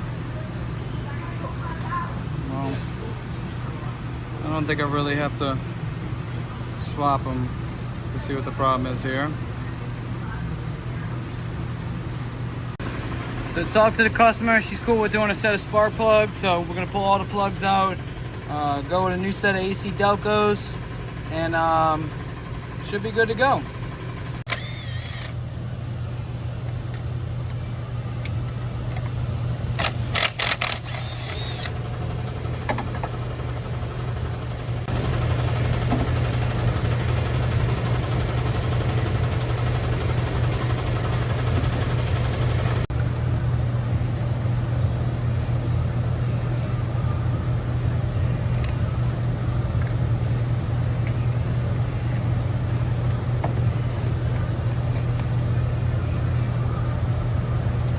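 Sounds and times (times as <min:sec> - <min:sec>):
car engine running: 0:12.8 - 0:24.7, 0:25.3 - 0:42.9.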